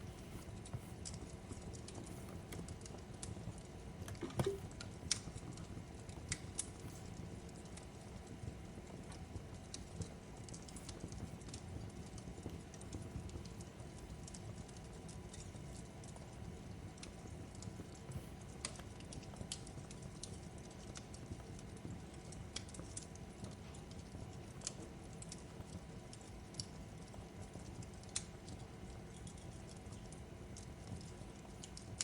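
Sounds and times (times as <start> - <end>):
low rumble of fire: 0.0 - 32.0
wood fire crackling and popping: 0.0 - 32.0.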